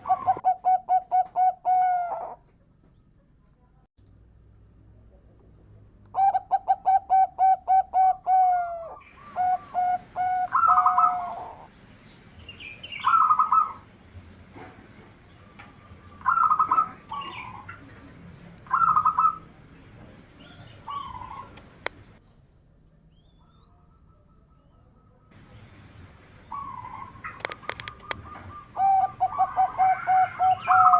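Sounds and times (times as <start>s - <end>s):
dove cooing: 0.0s - 2.4s, 6.2s - 11.7s, 12.9s - 13.9s, 15.5s - 18.0s, 18.6s - 19.5s, 20.4s - 21.8s, 26.5s - 30.9s.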